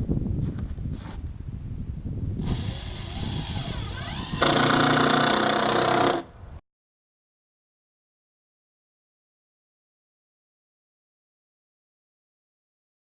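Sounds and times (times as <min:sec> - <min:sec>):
power drill motor running: 0:02.4 - 0:06.3.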